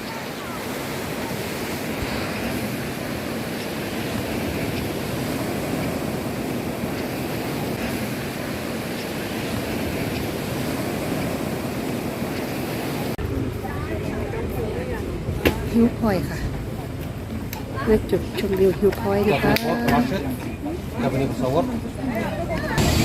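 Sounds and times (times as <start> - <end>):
surf washing onto beach: 0.0 - 16.4
wind: 0.0 - 23.0.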